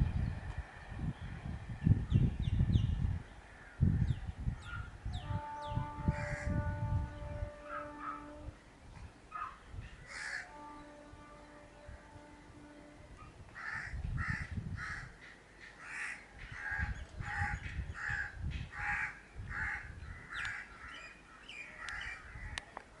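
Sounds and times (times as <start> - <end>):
crow cawing: 10.1 - 10.5, 13.6 - 15.1, 15.8 - 20.7.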